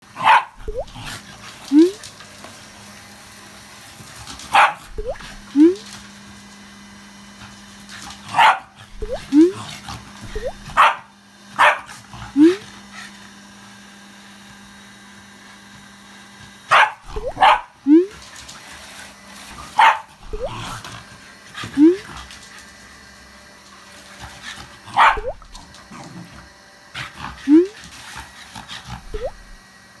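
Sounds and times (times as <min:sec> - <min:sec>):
dog barking and yelping: 0:00.2 - 0:01.0, 0:04.6 - 0:05.8, 0:08.4 - 0:09.6, 0:10.3 - 0:12.6, 0:16.7 - 0:18.2, 0:19.8 - 0:20.7, 0:24.9 - 0:25.6, 0:29.0 - 0:29.6.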